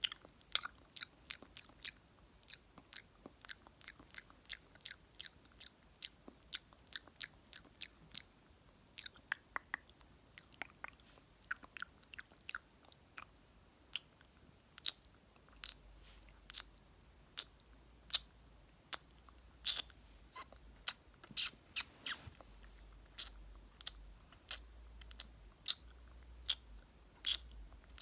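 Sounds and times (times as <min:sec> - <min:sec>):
wet lip smacks and kisses: 0:20.9 - 0:22.4.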